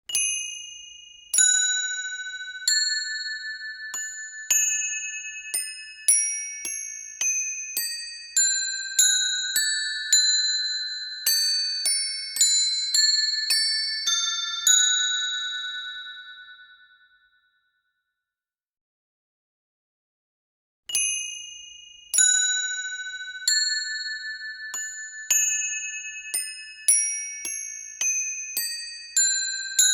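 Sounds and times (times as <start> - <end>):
wind chimes ringing: 22.2 - 29.9.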